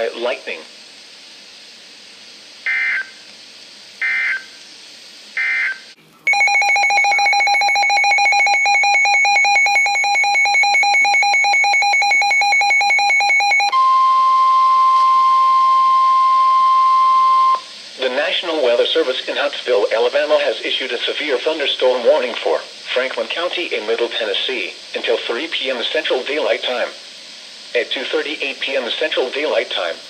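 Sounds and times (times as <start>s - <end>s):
pulsing electronic alarm: 2.7s - 3.2s, 4.0s - 4.5s, 5.4s - 17.6s
steady alarm tone: 2.7s - 3.2s, 5.4s - 17.7s.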